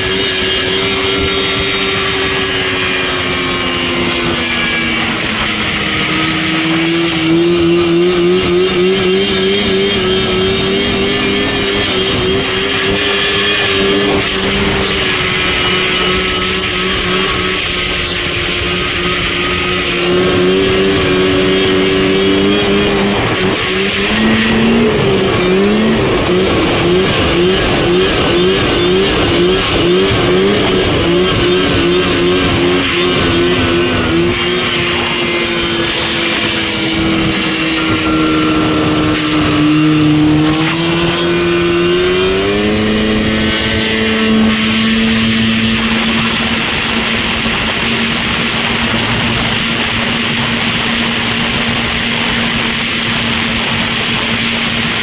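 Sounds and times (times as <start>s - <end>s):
snowmobile engine revving: 0.0s - 55.0s
thin high whine: 9.7s - 28.9s, 29.5s - 50.5s.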